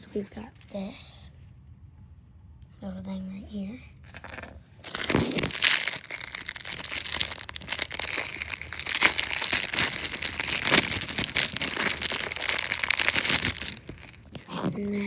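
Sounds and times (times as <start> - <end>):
plastic packaging crinkling: 4.8 - 15.0.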